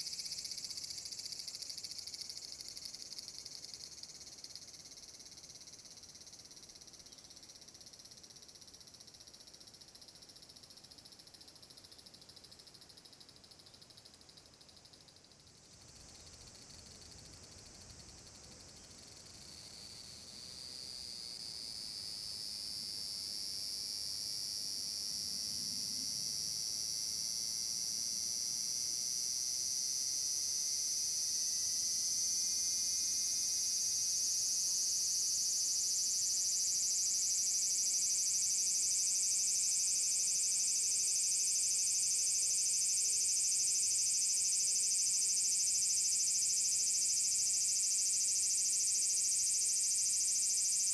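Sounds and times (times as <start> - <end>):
cicada buzzing: 25.7 - 50.9.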